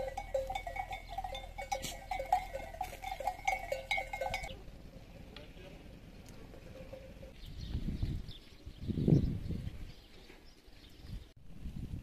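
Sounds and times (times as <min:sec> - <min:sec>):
livestock bells clinking: 0:00.0 - 0:05.0, 0:06.0 - 0:07.5.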